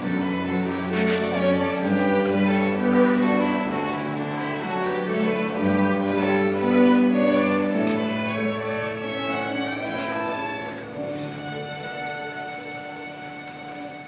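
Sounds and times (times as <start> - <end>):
bowed string ensemble: 0.0 - 14.0.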